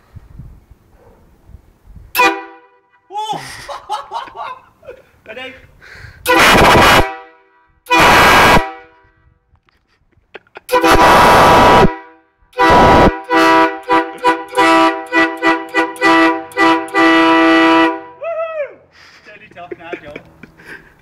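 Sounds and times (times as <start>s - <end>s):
loud train horn blasts: 2.2s - 3.0s, 6.2s - 9.4s, 10.7s - 18.2s.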